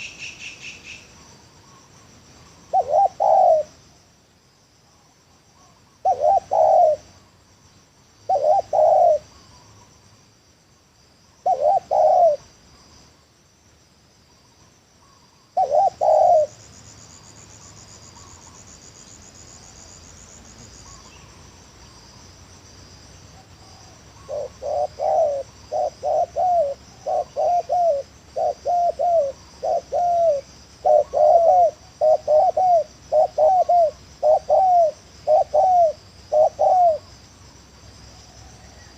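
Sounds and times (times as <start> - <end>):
crickets chirring: 0.0 - 38.9
dove cooing: 2.6 - 3.8, 6.0 - 7.3, 8.3 - 9.4, 11.4 - 12.5, 15.1 - 16.6, 23.6 - 37.1.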